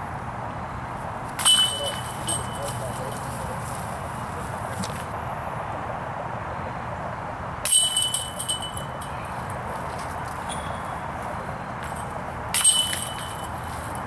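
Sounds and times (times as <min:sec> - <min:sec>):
steady outdoor hiss: 0:00.0 - 0:14.0
disc striking metal basket chains: 0:01.3 - 0:05.2, 0:07.6 - 0:14.0.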